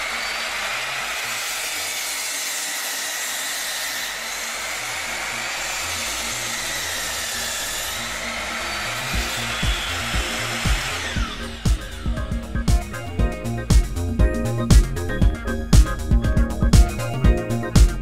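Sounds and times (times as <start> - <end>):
mitre saw motor whining: 0.0 - 18.0
music beat: 7.9 - 18.0.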